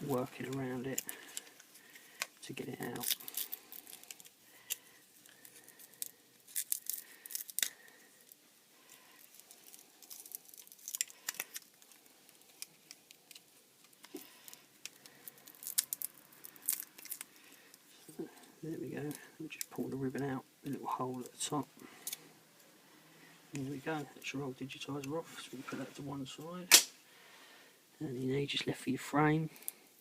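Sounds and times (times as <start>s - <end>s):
adhesive tearing crackles: 0.1s - 17.8s.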